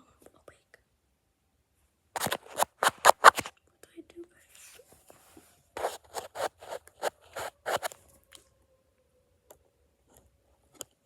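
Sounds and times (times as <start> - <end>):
rustling close to microphone: 2.2 - 3.5, 5.8 - 8.0.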